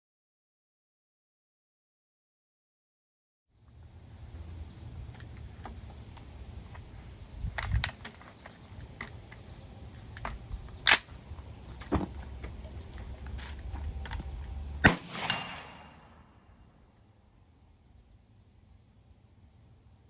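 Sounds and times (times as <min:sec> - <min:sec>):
dull distant report: 0:03.7 - 0:17.1
gunshot: 0:14.8 - 0:16.5.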